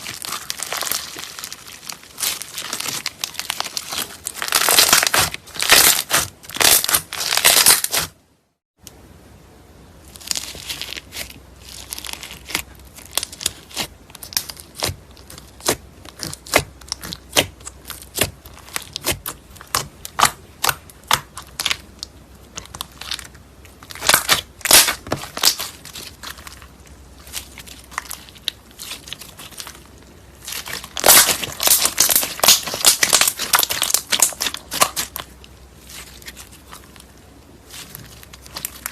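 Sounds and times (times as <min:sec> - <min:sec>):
slime crackling pops: 0:30.4 - 0:35.2.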